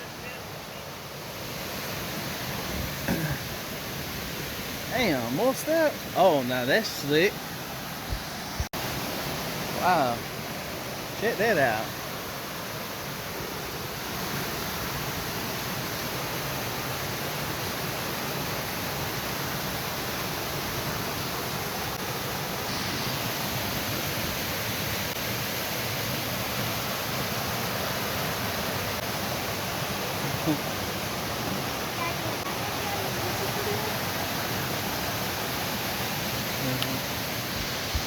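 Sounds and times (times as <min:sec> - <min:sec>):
waterfall rushing: 0:00.0 - 0:38.0.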